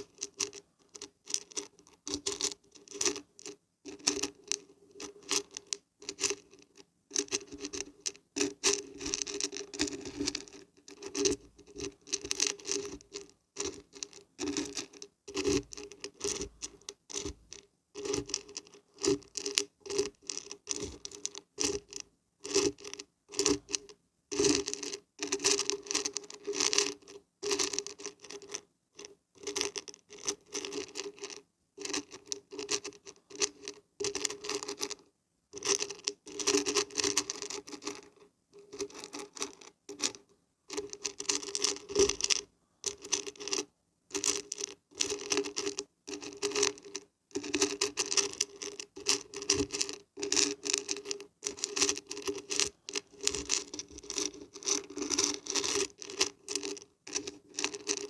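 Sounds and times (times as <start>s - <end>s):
dried beans being shaken: 44.2s - 58.0s.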